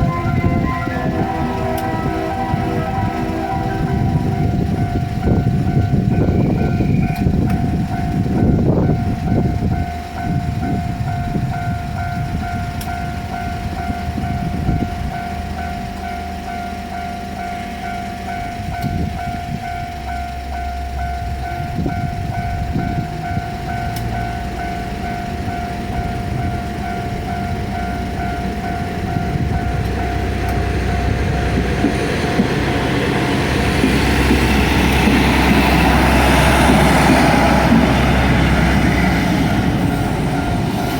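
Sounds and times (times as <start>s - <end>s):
diesel railcar engine and wheels: 0.0s - 40.9s
level crossing alarm dinging: 0.0s - 40.9s.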